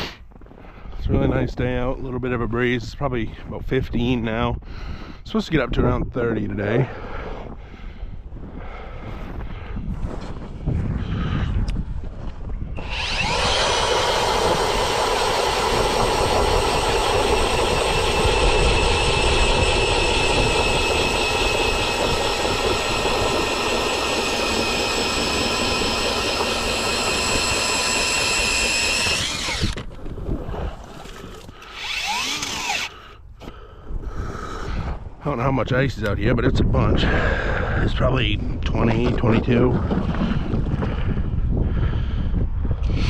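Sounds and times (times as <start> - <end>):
ice auger drilling whine: 12.8 - 33.6.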